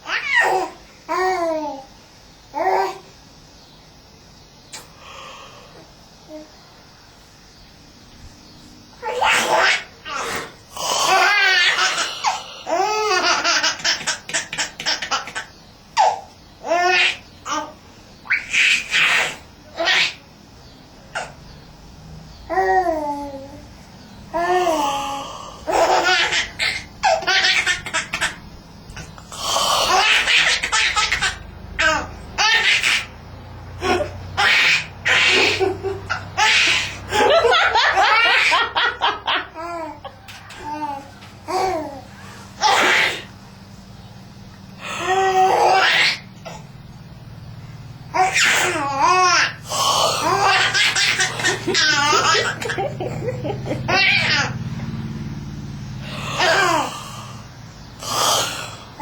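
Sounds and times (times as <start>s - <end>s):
steady low hum: 0.0s - 59.0s
long breathy sound: 4.7s - 7.0s, 11.8s - 13.1s, 24.7s - 25.8s, 44.7s - 45.2s, 49.6s - 50.4s, 55.8s - 59.0s
baby laughing: 9.0s - 10.4s, 11.1s - 20.2s, 24.4s - 33.1s, 33.8s - 42.0s, 45.0s - 46.6s, 48.2s - 54.6s.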